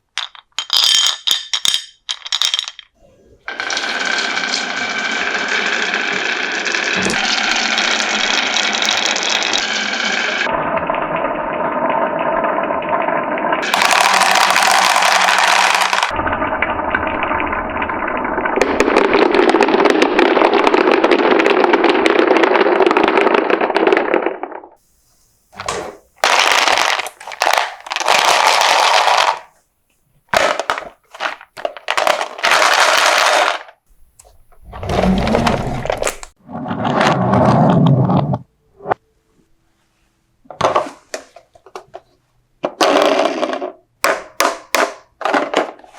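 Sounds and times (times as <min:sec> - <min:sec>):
marbles clattering down wooden run: 0:13.6 - 0:16.1, 0:26.2 - 0:29.5.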